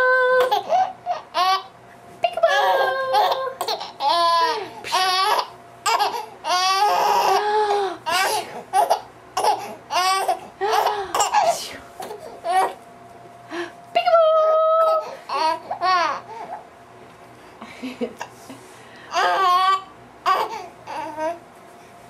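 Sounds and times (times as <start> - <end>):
baby laughing: 0.4 - 1.7, 2.4 - 12.8, 14.8 - 16.6, 19.1 - 21.4.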